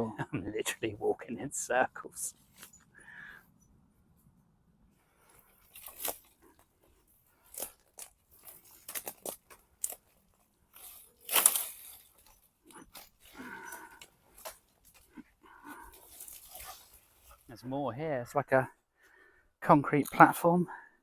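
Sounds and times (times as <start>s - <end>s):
twigs and leaves crunching underfoot: 2.3s - 3.6s, 4.9s - 17.6s.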